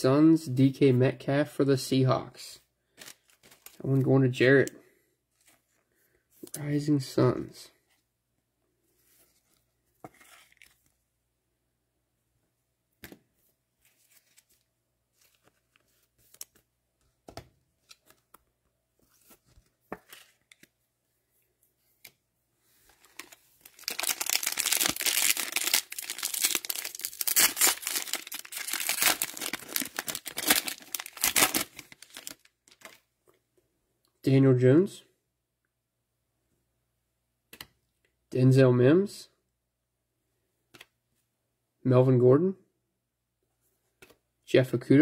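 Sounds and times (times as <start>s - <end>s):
wrapper tearing and crinkling: 23.1s - 33.0s.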